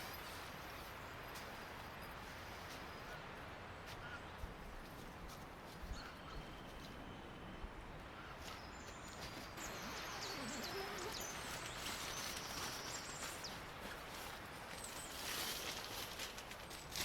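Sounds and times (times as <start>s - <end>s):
small birds chirping: 8.1s - 17.0s.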